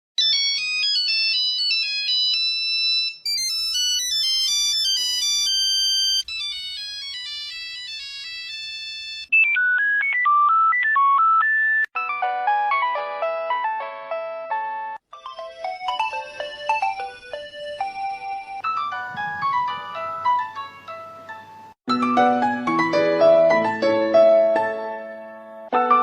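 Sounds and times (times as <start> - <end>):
mobile phone ringtones: 0.2 - 11.9, 15.1 - 20.8.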